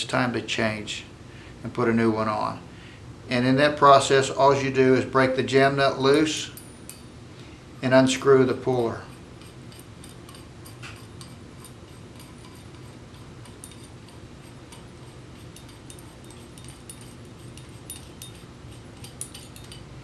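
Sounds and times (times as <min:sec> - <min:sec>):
steady low hum: 0:00.0 - 0:20.0
light metallic clicks and taps: 0:06.1 - 0:07.5.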